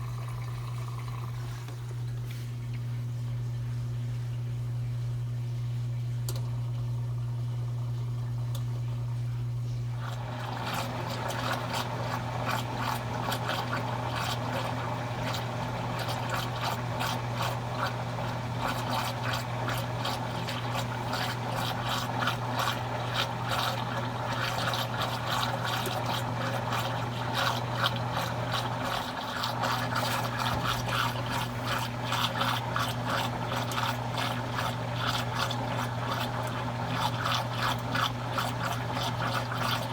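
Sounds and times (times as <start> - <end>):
washing machine humming: 0.0 - 39.9.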